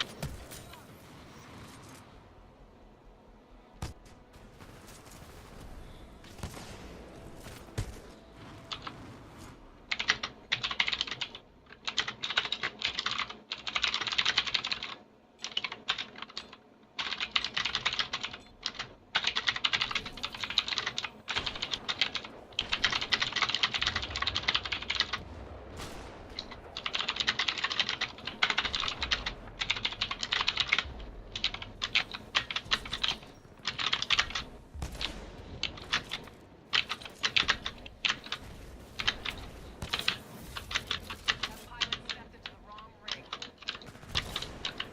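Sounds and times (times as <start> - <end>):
mechanical keyboard typing: 9.9 - 25.2, 26.4 - 34.5, 35.6 - 38.4, 39.0 - 44.9.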